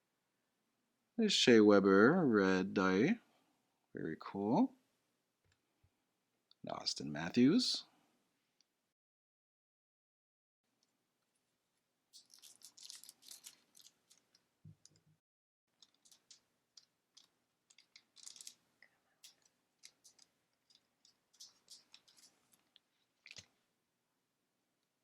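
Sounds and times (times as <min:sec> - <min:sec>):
cards and foil pack rustling: 0:12.2 - 0:15.0, 0:15.8 - 0:23.5.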